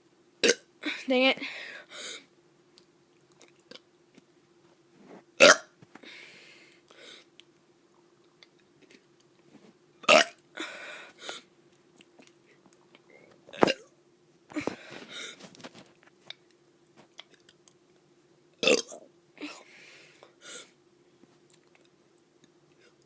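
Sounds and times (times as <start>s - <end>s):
child burping: 0.4s - 1.0s, 5.4s - 5.7s, 10.0s - 10.4s, 18.6s - 19.7s
child breathing: 0.8s - 2.3s, 6.0s - 7.3s, 10.6s - 11.5s, 14.6s - 15.5s.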